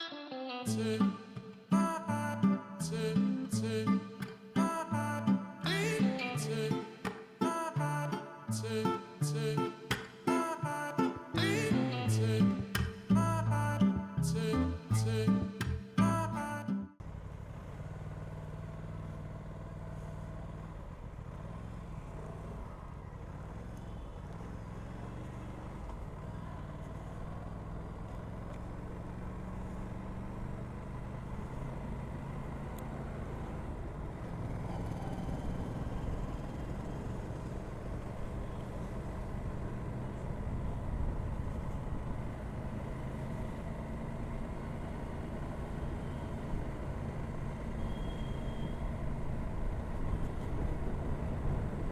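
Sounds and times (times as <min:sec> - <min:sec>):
motorcycle engine revving: 0:17.0 - 0:51.9.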